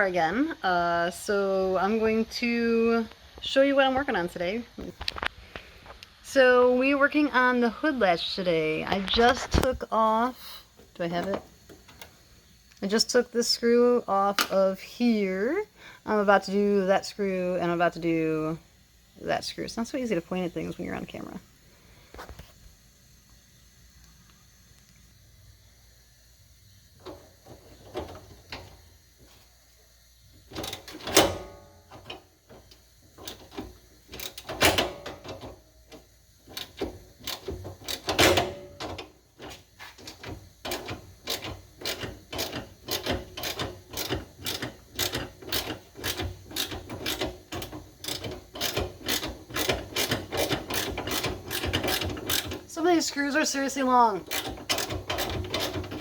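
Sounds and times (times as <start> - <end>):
ratcheting hand tool clicking: 31.9 - 52.6, 54.2 - 56.0.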